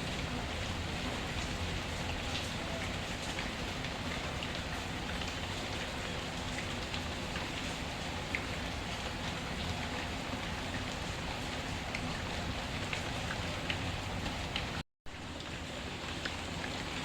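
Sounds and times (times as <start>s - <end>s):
steady rain: 0.0s - 17.0s.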